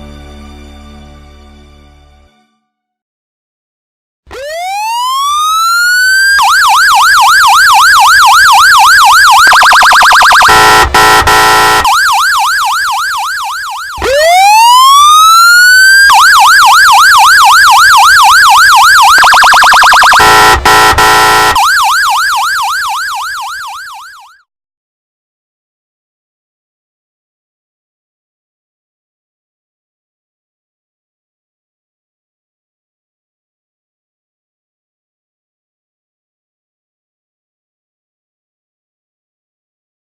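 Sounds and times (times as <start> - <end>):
electronic police siren: 4.3 - 24.5.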